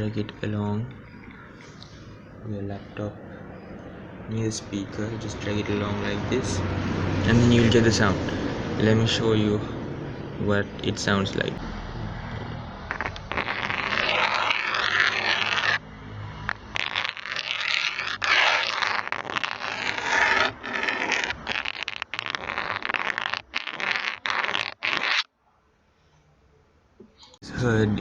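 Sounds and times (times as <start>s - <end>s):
pen cap scratching laptop surface: 12.9s - 15.8s, 16.5s - 25.3s.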